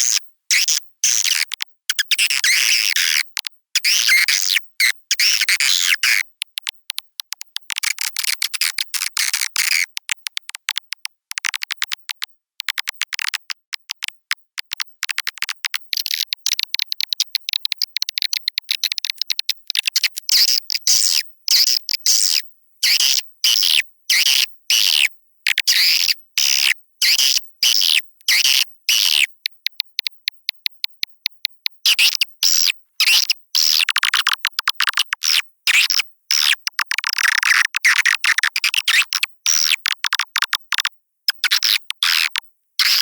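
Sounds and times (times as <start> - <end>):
swiftlet calls clicks and chirps: 0.1 - 43.0.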